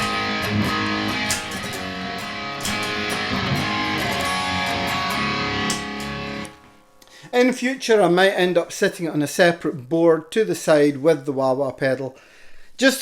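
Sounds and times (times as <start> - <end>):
electric guitar notes and chords: 0.0 - 7.0.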